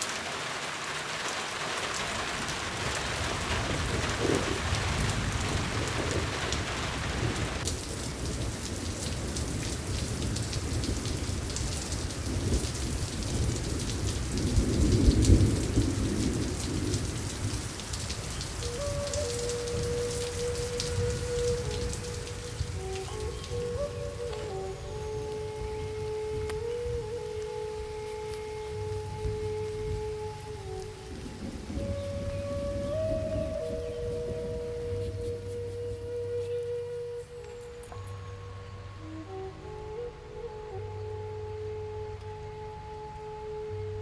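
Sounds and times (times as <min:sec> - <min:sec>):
thunder rumble: 0:00.0 - 0:35.9
steady rain falling: 0:00.0 - 0:44.0
soft sustained music tones: 0:01.9 - 0:44.0.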